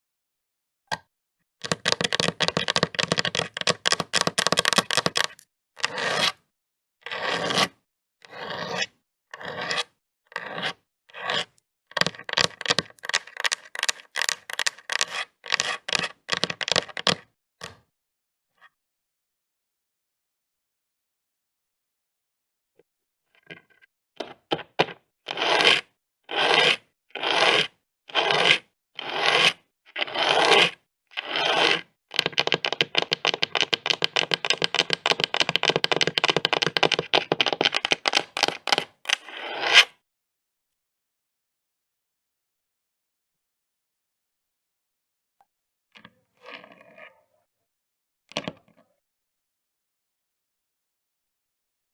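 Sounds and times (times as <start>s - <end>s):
fingernails tapping rapidly: 1.6s - 5.3s, 32.2s - 38.8s
fingernails scraping: 1.6s - 6.4s, 7.1s - 17.2s, 23.4s - 39.9s.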